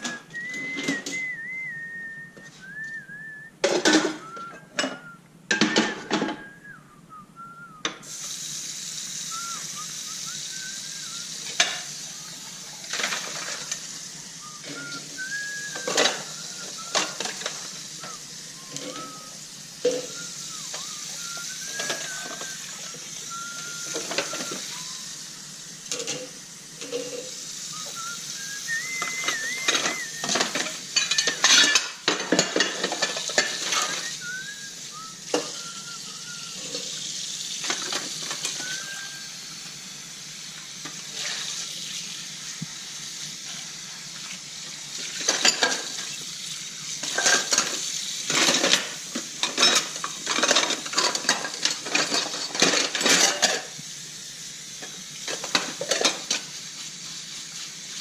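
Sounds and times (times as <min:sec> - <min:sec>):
water hissing: 0:00.0 - 0:03.5, 0:07.4 - 0:58.0
dishes and cutlery clattering: 0:03.6 - 0:06.4, 0:11.6 - 0:11.9, 0:12.9 - 0:13.8, 0:15.8 - 0:16.3, 0:16.9 - 0:17.7, 0:21.7 - 0:22.4, 0:25.9 - 0:27.4, 0:29.0 - 0:34.0, 0:37.6 - 0:38.6, 0:45.2 - 0:46.1, 0:47.0 - 0:53.7, 0:54.8 - 0:56.5.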